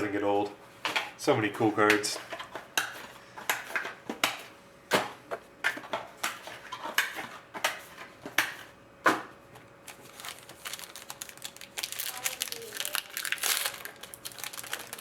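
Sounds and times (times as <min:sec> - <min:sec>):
cards and packaging rustling: 0:09.5 - 0:15.0.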